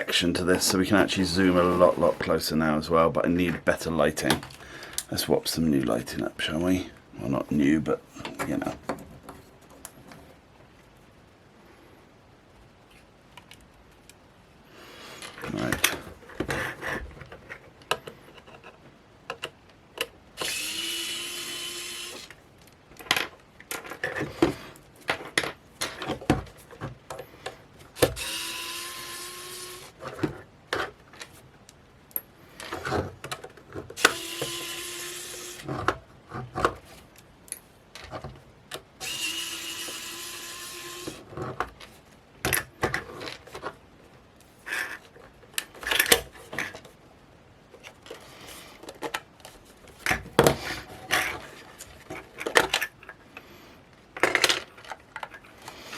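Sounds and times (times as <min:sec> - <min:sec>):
clicks and handling of small parts: 0:12.8 - 0:14.2, 0:15.2 - 0:20.7, 0:21.4 - 0:43.8, 0:47.7 - 0:55.9
electric screwdriver running: 0:20.4 - 0:22.3, 0:28.0 - 0:30.0, 0:34.0 - 0:35.7, 0:39.0 - 0:41.2.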